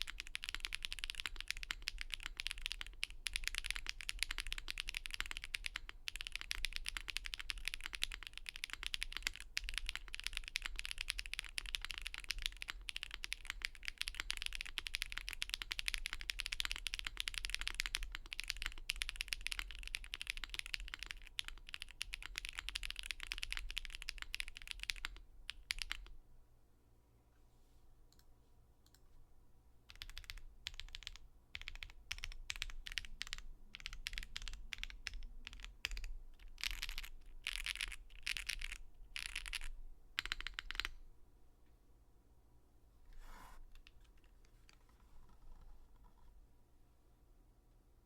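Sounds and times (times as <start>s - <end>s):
mechanical keyboard typing: 0.0s - 26.1s, 29.9s - 41.0s.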